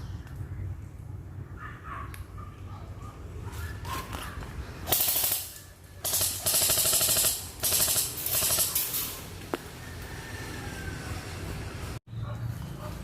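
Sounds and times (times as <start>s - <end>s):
airsoft guns firing bursts: 4.9s - 9.1s.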